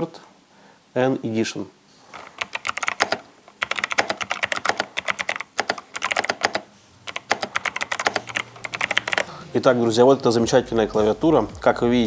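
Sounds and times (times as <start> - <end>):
mechanical keyboard typing: 2.1 - 9.3.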